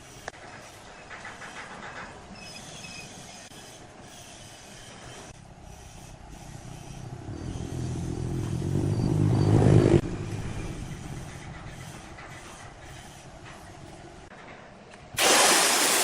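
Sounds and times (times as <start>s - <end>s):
tool cutting spinning wood: 3.2s - 13.8s
lathe motor hum: 5.6s - 12.0s.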